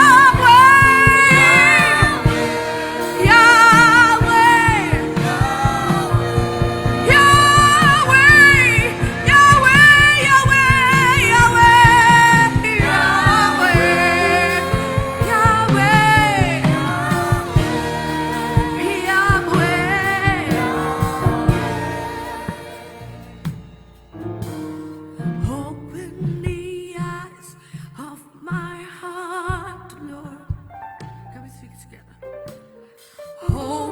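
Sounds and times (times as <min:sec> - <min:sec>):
gospel singing over a beat: 0:00.0 - 0:24.0.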